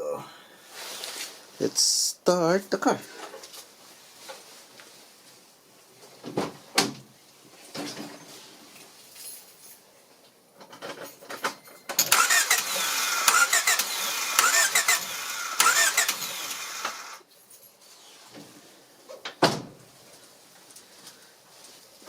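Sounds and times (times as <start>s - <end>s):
starter cranking engine: 12.0s - 17.2s.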